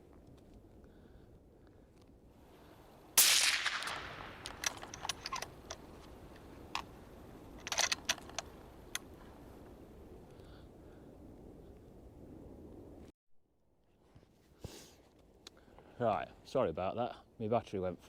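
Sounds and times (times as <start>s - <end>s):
rifle shot: 3.2s - 5.4s.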